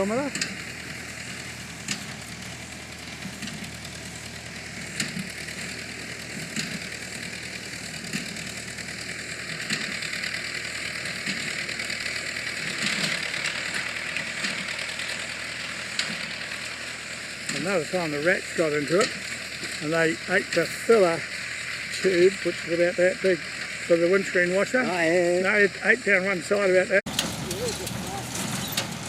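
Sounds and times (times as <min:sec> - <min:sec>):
tractor engine drone: 0:00.0 - 0:29.0.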